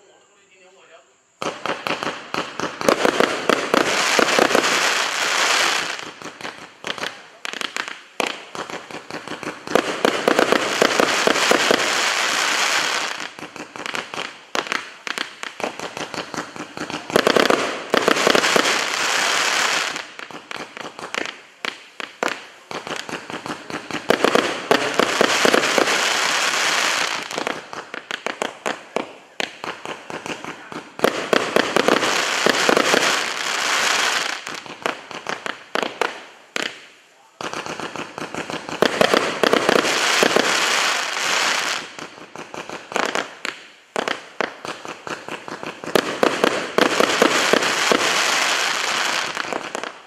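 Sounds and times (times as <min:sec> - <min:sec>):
dense crackling firework salvo: 0:01.3 - 0:50.0
firework cracks: 0:01.4 - 0:50.0.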